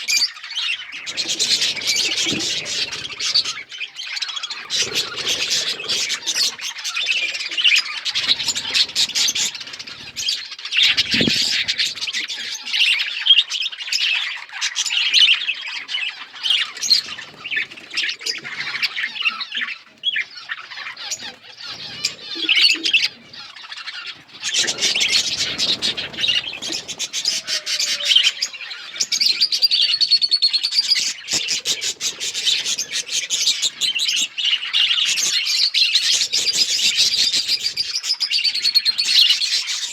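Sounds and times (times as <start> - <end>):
budgerigars chirping and squawking: 0.0 - 39.9.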